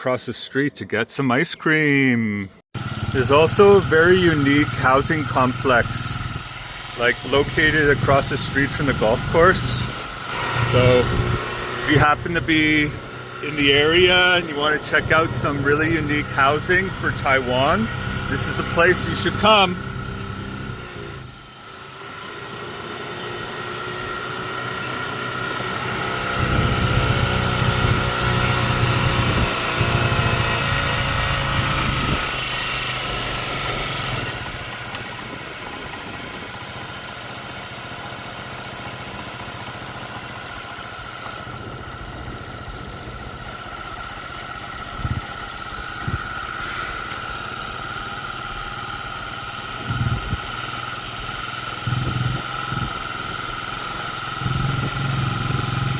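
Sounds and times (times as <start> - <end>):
vehicle engine running: 2.8 - 55.9
steady high whine: 2.9 - 22.4, 40.6 - 55.9.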